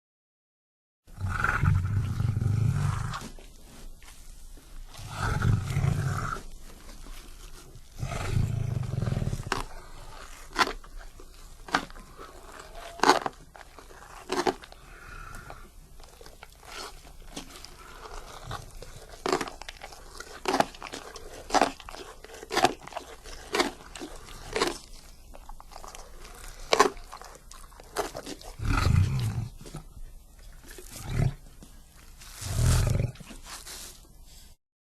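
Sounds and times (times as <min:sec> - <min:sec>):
lion chewing crunches: 0:02.0 - 0:34.4
lion growling: 0:04.9 - 0:06.5, 0:07.8 - 0:10.6, 0:28.0 - 0:29.8.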